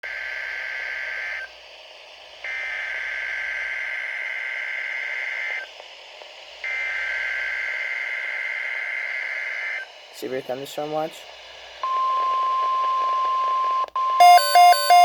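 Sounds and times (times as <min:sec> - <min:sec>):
radio hiss: 0:00.1 - 0:13.1.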